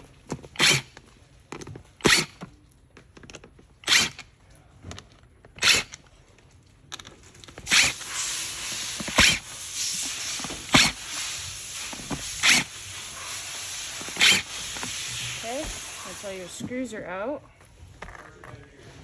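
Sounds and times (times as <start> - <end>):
steady hiss: 7.7 - 17.3.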